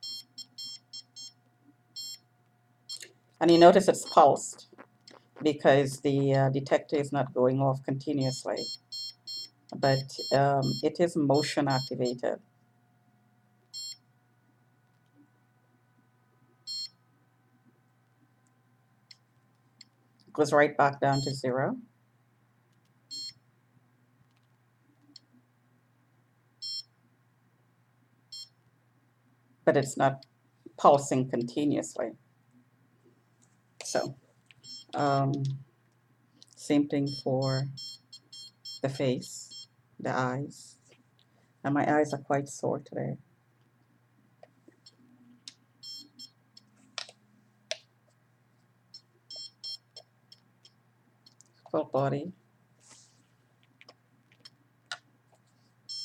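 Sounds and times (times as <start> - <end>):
signal detector short beeps: 8.6 - 12.2.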